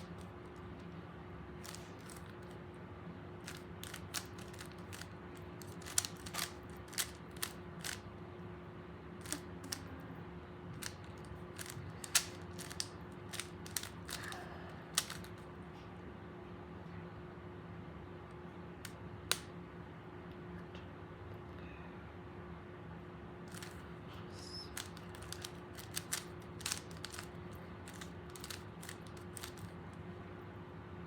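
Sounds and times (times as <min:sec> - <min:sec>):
plastic puzzle cube clicking: 0:00.0 - 0:00.3, 0:01.6 - 0:02.5, 0:03.4 - 0:08.0, 0:09.2 - 0:09.8, 0:10.8 - 0:15.4, 0:23.5 - 0:23.8, 0:24.8 - 0:29.7
steady low hum: 0:00.0 - 0:31.0.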